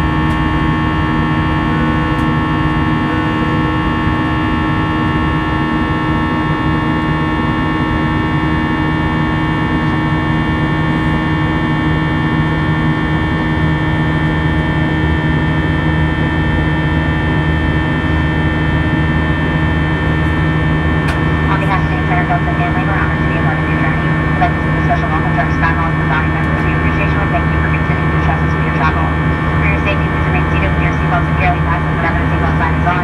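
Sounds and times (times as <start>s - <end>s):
aircraft cabin engine drone: 0.0s - 33.0s
constant steady tones: 15.9s - 33.0s.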